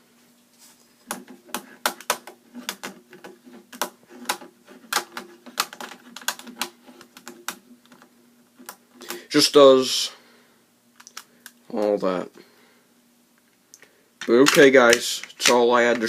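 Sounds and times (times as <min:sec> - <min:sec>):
puzzle cube clicking and clacking: 0:01.5 - 0:09.2, 0:14.2 - 0:16.0.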